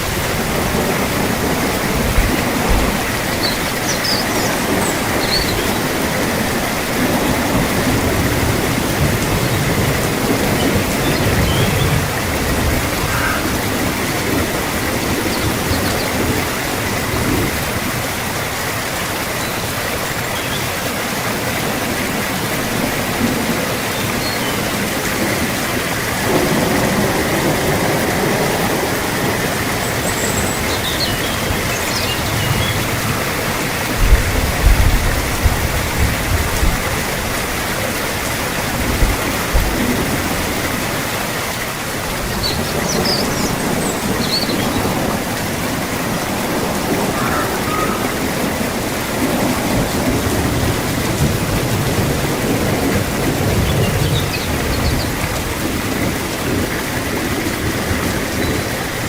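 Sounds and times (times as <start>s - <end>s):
steady rain: 0.0s - 59.0s
low rumbling thumps: 33.9s - 37.3s.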